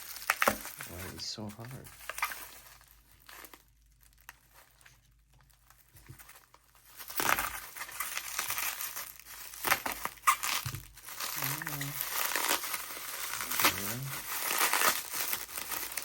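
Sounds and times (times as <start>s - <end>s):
packaging crinkling and tearing: 0.0s - 16.0s
sharp crackles: 6.8s - 16.0s.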